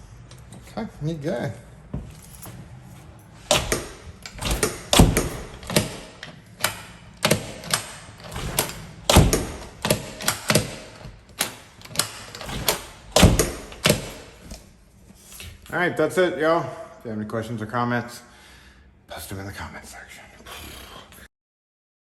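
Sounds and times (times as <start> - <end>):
deadbolt clicking and clacking: 3.4 - 14.8.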